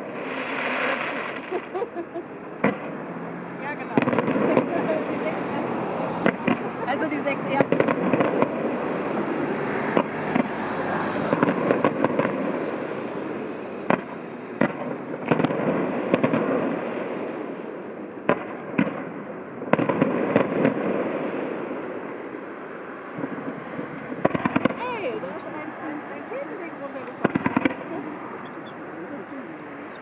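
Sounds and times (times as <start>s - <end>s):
distant firework bangs: 0.0s - 30.0s
firework crackling: 0.0s - 30.0s.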